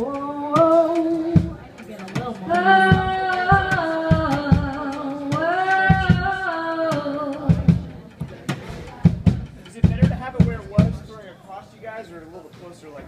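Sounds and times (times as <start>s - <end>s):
women singing long notes: 0.0s - 8.0s
drum hits thudding: 0.6s - 11.2s.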